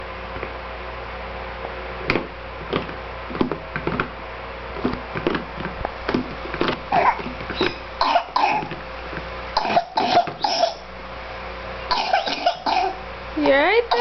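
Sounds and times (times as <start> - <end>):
faint background hum: 0.0 - 14.0.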